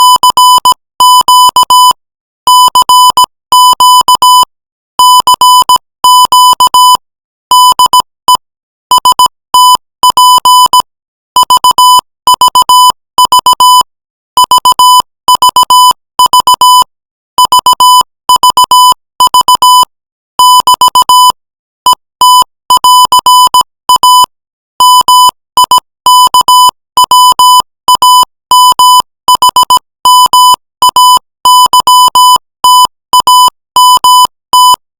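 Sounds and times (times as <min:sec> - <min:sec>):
morse code beeps: 0:00.0 - 0:01.9, 0:02.5 - 0:04.4, 0:05.0 - 0:07.0, 0:22.2 - 0:24.2, 0:24.8 - 0:34.8.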